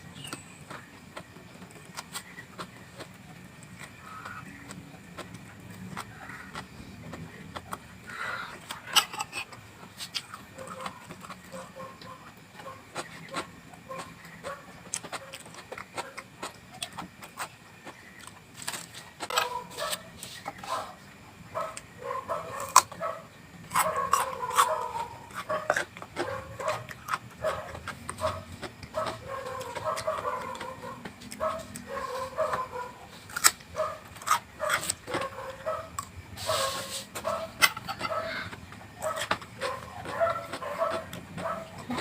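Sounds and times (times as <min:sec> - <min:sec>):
person chewing raw vegetables: 0:00.0 - 0:42.0
domestic animals calling: 0:06.0 - 0:06.6, 0:33.8 - 0:42.0.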